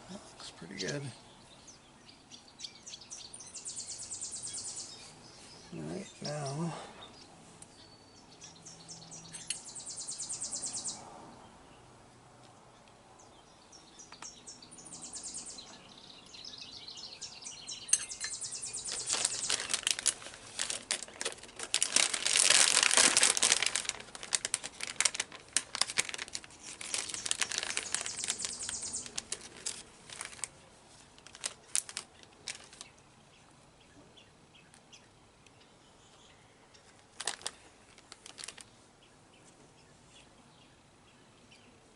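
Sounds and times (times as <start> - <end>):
packaging crinkling: 18.6 - 33.0, 37.0 - 38.7.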